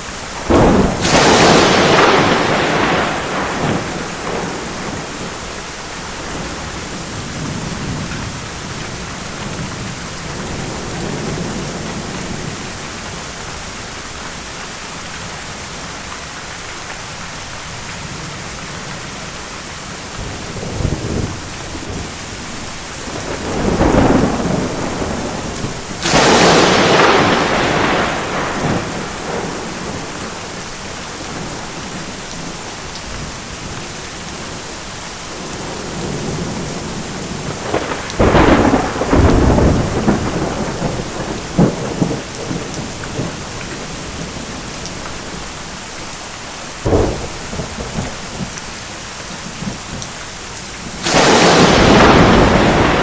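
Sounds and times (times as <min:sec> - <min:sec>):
heavy rain: 0:00.0 - 0:53.0
rolling thunder: 0:00.3 - 0:13.0, 0:20.2 - 0:32.5, 0:35.4 - 0:45.5, 0:46.8 - 0:50.1, 0:50.8 - 0:53.0
sharp thunder crack: 0:00.4 - 0:05.4, 0:23.0 - 0:31.9, 0:35.6 - 0:43.4, 0:46.8 - 0:48.5, 0:51.0 - 0:53.0.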